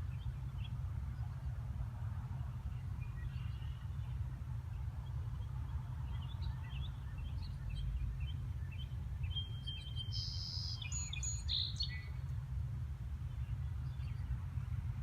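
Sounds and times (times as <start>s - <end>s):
small birds chirping: 2.4s - 12.4s, 13.2s - 15.0s.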